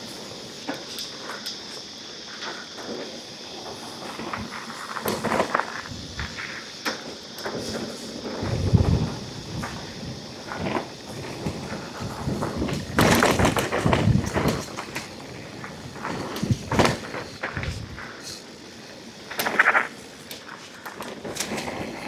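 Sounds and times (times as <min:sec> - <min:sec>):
bike tyres on dirt: 0:00.0 - 0:22.0
bike thudding and rattling over bumps: 0:07.6 - 0:22.0.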